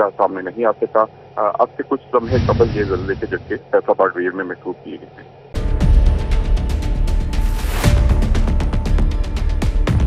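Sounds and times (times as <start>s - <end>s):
deep bass rumble: 2.2s - 3.6s.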